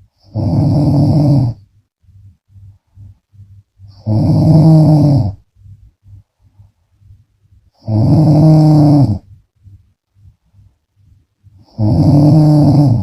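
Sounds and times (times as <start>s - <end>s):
faint rhythmic breathing: 0.0s - 13.0s
woman snoring: 0.2s - 1.6s, 3.9s - 5.4s, 7.8s - 9.3s, 11.6s - 13.0s.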